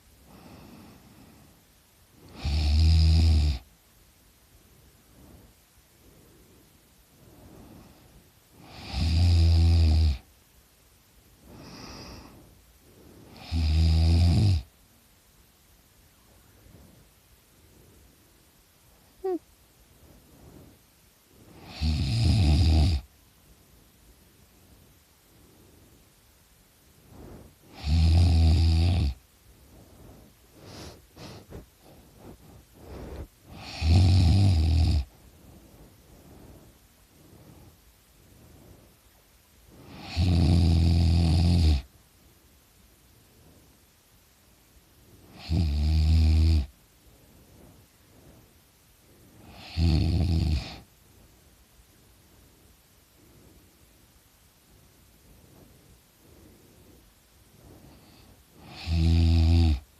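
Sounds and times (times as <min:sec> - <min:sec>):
soft breath: 0:00.0 - 0:02.4, 0:03.6 - 0:09.0, 0:10.2 - 0:13.7, 0:14.6 - 0:22.0, 0:23.0 - 0:40.8, 0:41.8 - 0:45.5, 0:46.6 - 0:59.0
boy snoring loudly: 0:02.3 - 0:03.6, 0:08.6 - 0:10.2, 0:13.3 - 0:14.7, 0:21.6 - 0:23.1, 0:27.7 - 0:29.2, 0:33.5 - 0:35.1, 0:39.9 - 0:41.9, 0:45.4 - 0:46.7, 0:49.5 - 0:50.8, 0:58.6 - 0:59.8.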